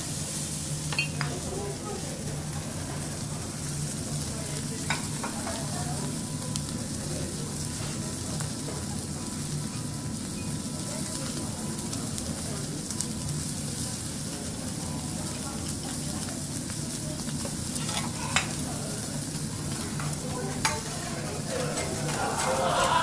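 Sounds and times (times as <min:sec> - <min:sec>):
food sizzling on griddle: 0:00.0 - 0:23.0
cooking utensils ticking: 0:17.2 - 0:23.0.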